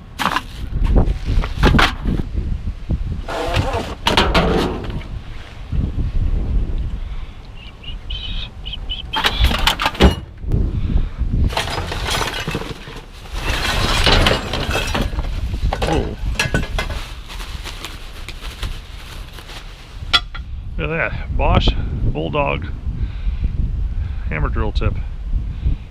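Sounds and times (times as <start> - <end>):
wind rumble on microphone: 0.0 - 25.9
junk clattering and rattling: 3.4 - 5.2, 9.1 - 10.5, 11.4 - 17.2.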